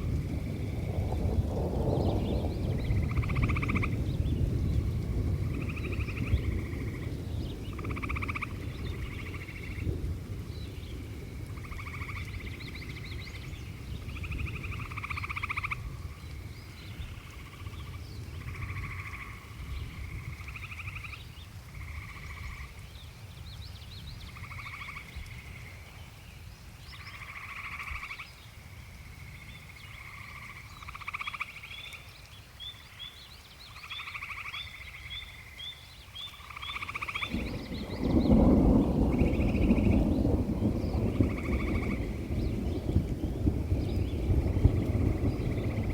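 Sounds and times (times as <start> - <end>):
frogs trilling: 2.4 - 10.1, 10.7 - 22.8, 24.3 - 26.2, 26.9 - 45.9.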